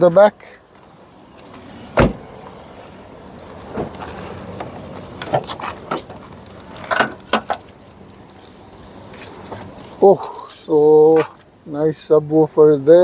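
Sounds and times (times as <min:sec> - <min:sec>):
footsteps: 0:00.7 - 0:11.5.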